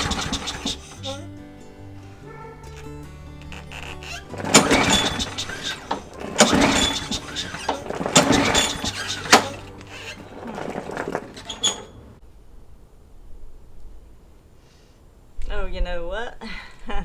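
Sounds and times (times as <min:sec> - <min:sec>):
weak scraping sounds: 0:00.0 - 0:01.4, 0:02.0 - 0:12.2
starter cord yanked: 0:00.0 - 0:12.2.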